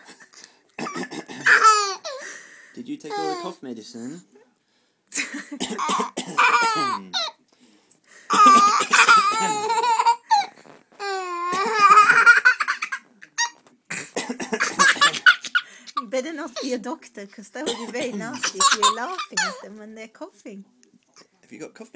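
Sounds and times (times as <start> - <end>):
person coughing: 0.8 - 1.8, 5.2 - 7.1, 8.3 - 10.5, 11.4 - 13.0, 13.9 - 15.6, 17.7 - 19.6
baby laughing: 0.8 - 2.2, 3.1 - 3.6, 5.8 - 7.4, 8.4 - 13.6, 14.6 - 15.7, 18.3 - 19.6.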